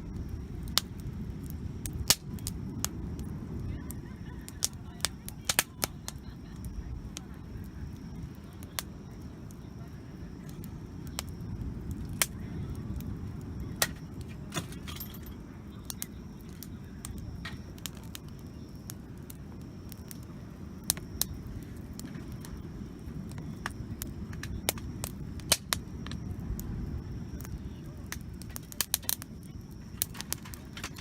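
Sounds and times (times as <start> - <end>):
campfire crackling and popping: 0.0 - 31.0.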